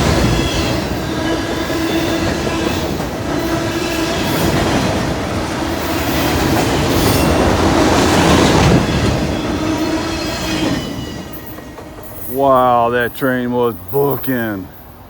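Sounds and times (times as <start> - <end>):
diesel locomotive engine drone: 0.0 - 15.0
train wheels rumbling over rails: 0.0 - 15.0.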